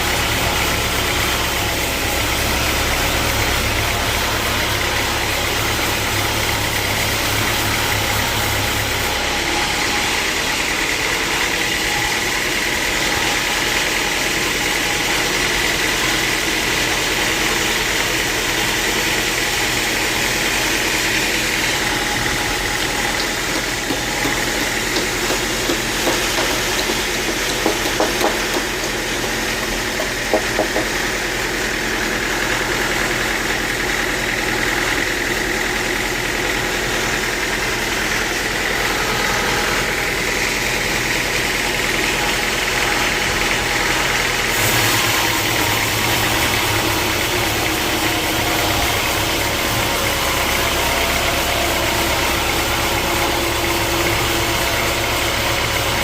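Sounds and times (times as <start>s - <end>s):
sawmill machinery running: 0.0s - 56.0s
sharp knocks: 23.2s - 31.1s.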